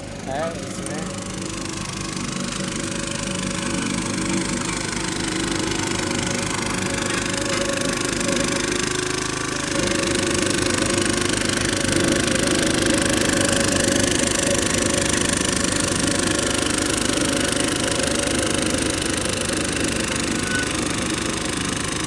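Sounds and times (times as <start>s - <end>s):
road roller engine chugging: 0.0s - 22.0s.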